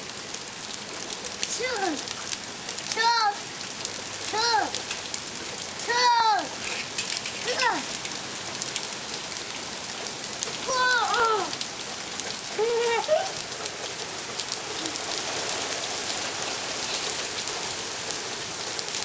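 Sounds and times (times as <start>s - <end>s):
heavy rain pattering: 0.0s - 19.0s
high-pitched voice calling out: 1.5s - 2.0s, 2.9s - 3.4s, 4.3s - 4.8s, 5.8s - 6.6s, 7.4s - 7.9s, 10.6s - 11.6s.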